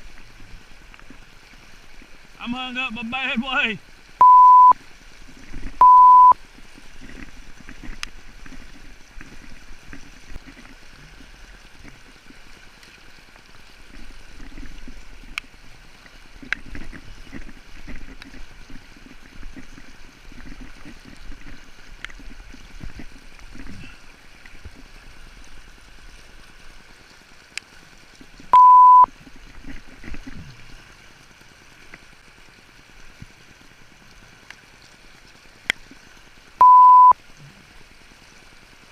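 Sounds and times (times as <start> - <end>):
river water running: 0.0 - 38.9
beep tone: 4.2 - 4.8, 5.8 - 6.4, 28.6 - 29.1, 36.6 - 37.2.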